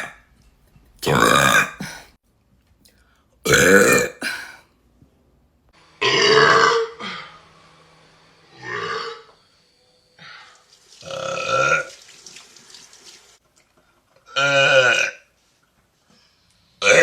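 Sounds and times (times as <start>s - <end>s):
woman belching: 1.0s - 2.0s, 3.5s - 4.6s.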